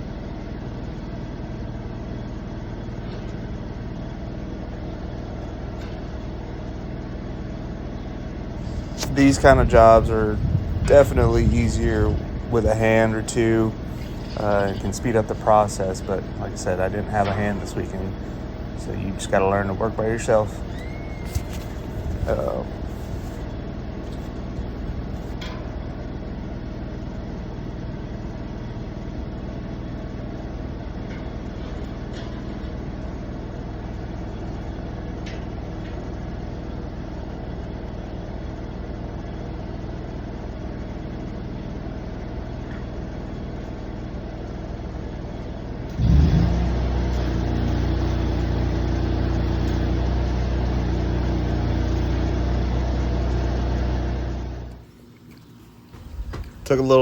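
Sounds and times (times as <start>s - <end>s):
engine running and revving: 45.8s - 54.8s.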